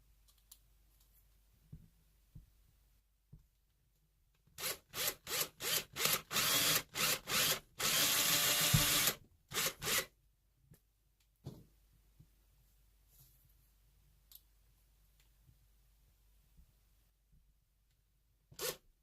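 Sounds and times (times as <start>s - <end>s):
electric drill driving screw: 4.6s - 10.1s, 18.6s - 18.8s.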